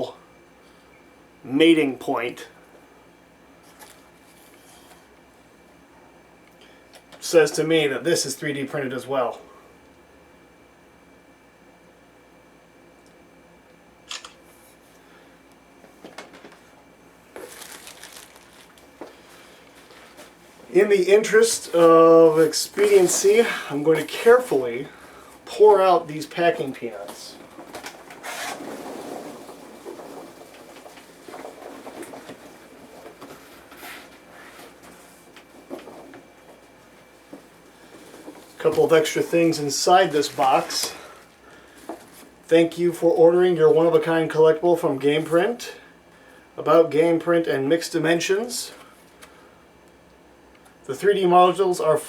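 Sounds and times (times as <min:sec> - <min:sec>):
sharp click: 0:14.1 - 0:14.4
packing material rustling: 0:17.3 - 0:20.4, 0:26.8 - 0:36.6, 0:37.2 - 0:42.4
packing peanuts pouring from box: 0:17.4 - 0:18.7.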